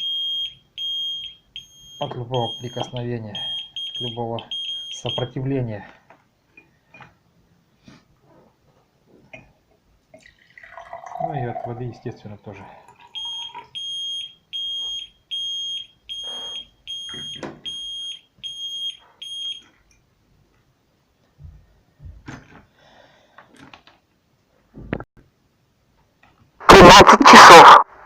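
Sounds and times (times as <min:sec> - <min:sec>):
alarm beeping: 0:00.0 - 0:05.4, 0:13.1 - 0:19.6.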